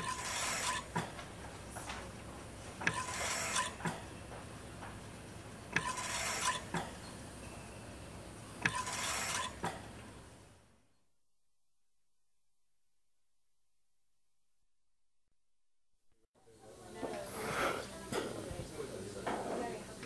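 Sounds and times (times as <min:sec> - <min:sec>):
ventilator air hiss: 0:16.6 - 0:20.0.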